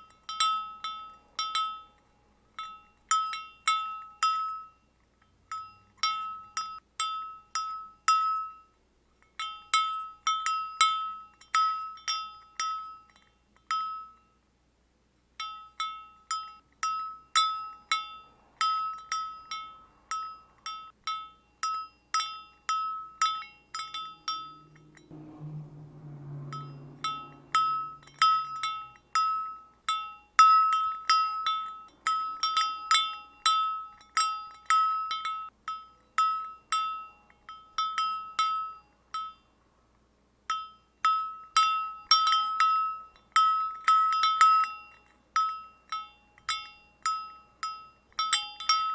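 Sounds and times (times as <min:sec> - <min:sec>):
cow bell clanking: 0:15.4 - 0:35.5
low drawn-out sound: 0:24.0 - 0:29.0.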